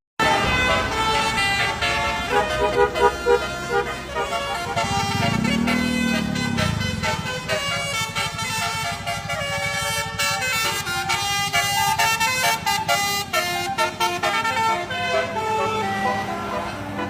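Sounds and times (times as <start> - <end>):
bus engine pulsing: 0.2 - 17.0
multi-note bus horn tune: 0.2 - 17.0.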